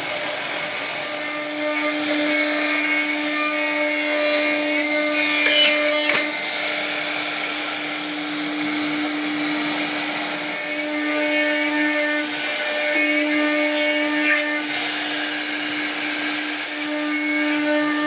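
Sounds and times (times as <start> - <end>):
power tool cutting wood: 0.0 - 18.0.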